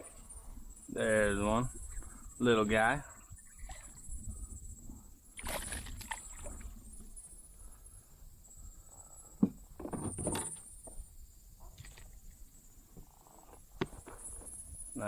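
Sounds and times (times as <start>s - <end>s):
fish splashing: 5.4s - 6.8s.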